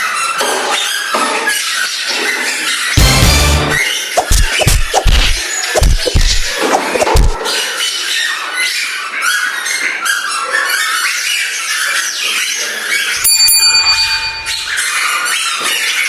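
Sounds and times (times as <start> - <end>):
steady high tone: 13.2 - 15.3.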